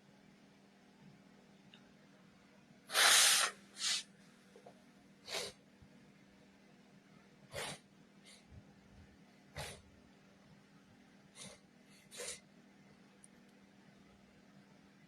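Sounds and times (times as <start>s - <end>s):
nose sniffs: 2.9s - 4.1s, 5.2s - 5.6s, 7.5s - 8.5s, 9.6s - 9.9s, 11.4s - 12.4s
person sneezing: 2.9s - 4.1s.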